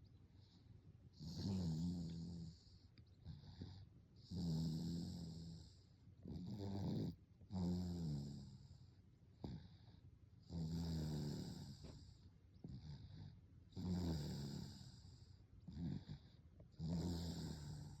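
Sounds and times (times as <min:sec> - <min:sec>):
baby snoring: 0:01.2 - 0:02.6.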